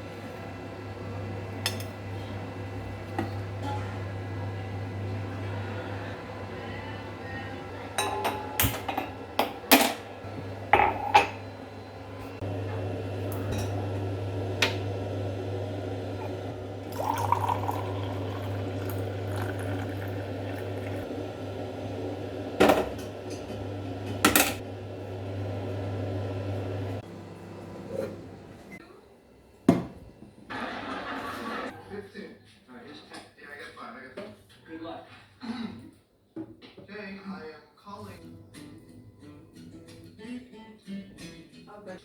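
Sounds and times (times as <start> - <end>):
liquid pouring into vessel: 16.5 - 21.1.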